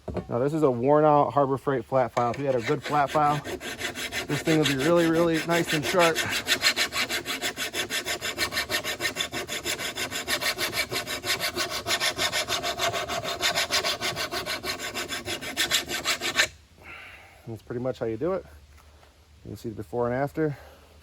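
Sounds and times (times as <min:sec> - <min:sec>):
file rasping on steel blade: 0:02.2 - 0:16.5.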